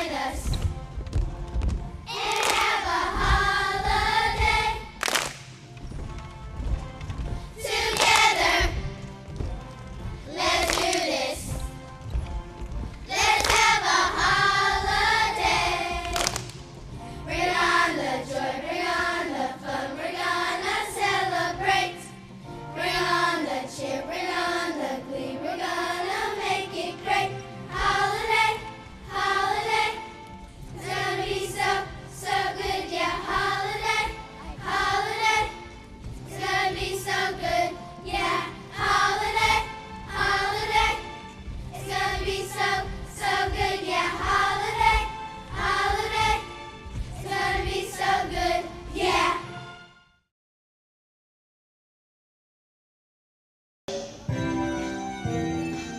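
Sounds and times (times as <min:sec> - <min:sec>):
choir singing: 0:00.0 - 0:00.4, 0:02.1 - 0:04.9, 0:07.6 - 0:08.8, 0:13.1 - 0:16.2, 0:17.2 - 0:22.1, 0:22.8 - 0:30.1, 0:30.7 - 0:35.6, 0:36.3 - 0:41.2, 0:41.8 - 0:46.5, 0:47.2 - 0:49.6.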